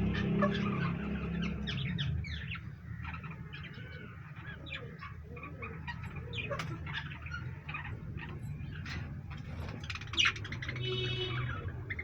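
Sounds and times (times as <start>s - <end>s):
parrots chirping and calling: 0.0s - 12.0s.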